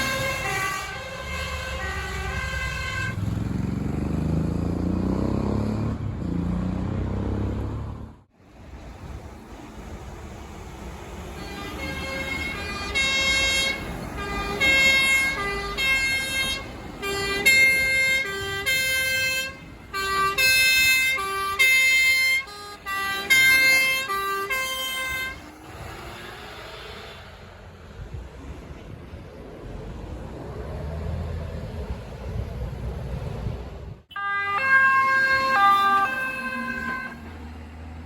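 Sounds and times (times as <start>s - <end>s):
fire engine two-tone siren: 0.0s - 3.2s, 11.3s - 25.6s, 34.1s - 38.0s
truck engine and tyres rushing: 0.0s - 38.0s.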